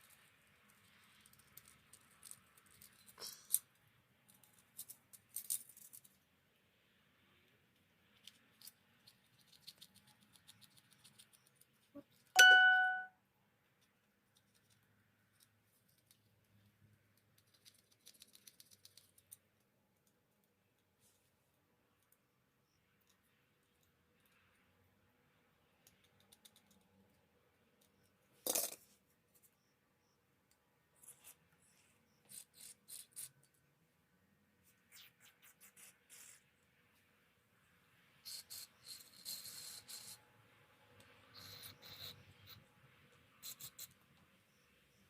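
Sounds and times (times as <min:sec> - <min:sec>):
small metal parts clicking and rattling: 0:00.0 - 0:06.2, 0:28.4 - 0:28.9
ringing metallic clink: 0:12.4 - 0:13.1.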